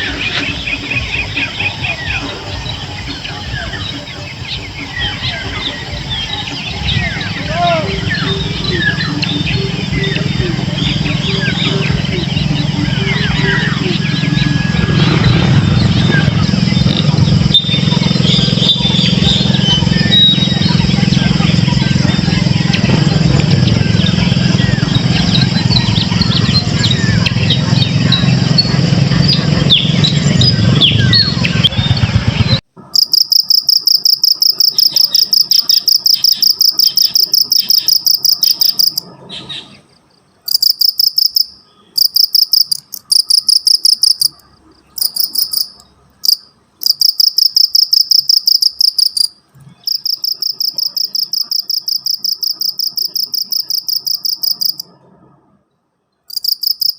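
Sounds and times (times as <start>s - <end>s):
cricket chirping: 0.0s - 30.2s, 32.9s - 39.1s, 39.9s - 54.9s, 56.3s - 56.9s
bird chirps: 0.0s - 54.9s
low rumble: 0.1s - 32.6s.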